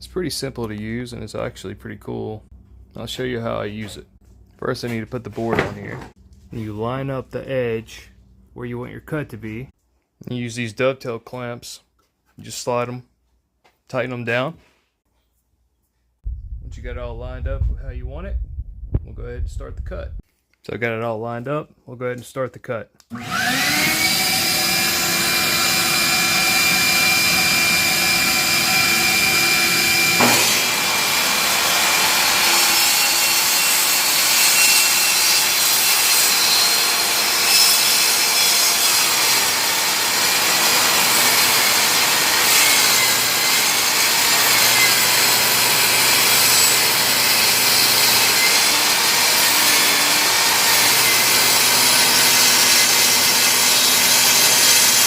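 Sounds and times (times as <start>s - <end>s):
saw cutting wood: 23.1s - 55.0s
table saw blade humming: 23.1s - 55.0s.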